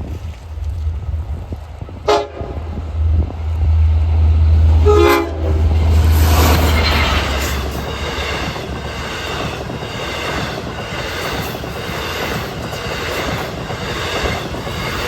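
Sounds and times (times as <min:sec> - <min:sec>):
locomotive engine rumble: 0:00.0 - 0:15.0
train wheels rushing: 0:00.0 - 0:15.0
train horn blasts: 0:02.0 - 0:03.3, 0:04.7 - 0:08.4.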